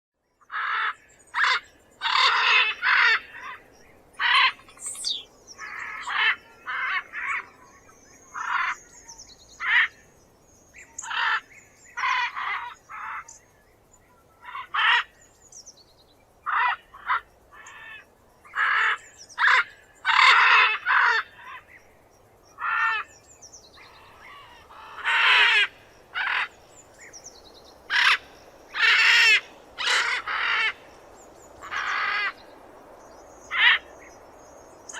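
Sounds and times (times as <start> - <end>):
macaw screeching: 0.5 - 3.6, 28.8 - 30.8.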